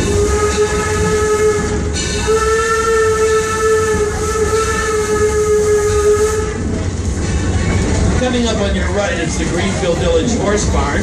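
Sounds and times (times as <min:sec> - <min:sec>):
steam locomotive whistle: 0:00.0 - 0:06.7
low rumble of train running: 0:00.0 - 0:11.0.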